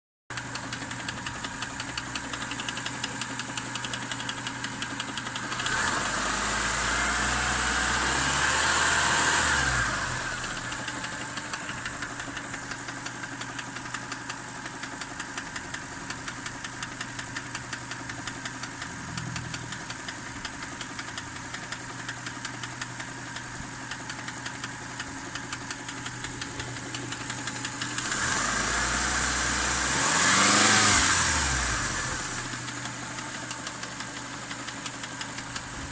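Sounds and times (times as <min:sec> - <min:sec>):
car engine idling: 0:00.3 - 0:35.9
engine knocking: 0:00.3 - 0:35.9
engine revving: 0:05.4 - 0:12.2, 0:18.4 - 0:20.9, 0:26.1 - 0:35.2.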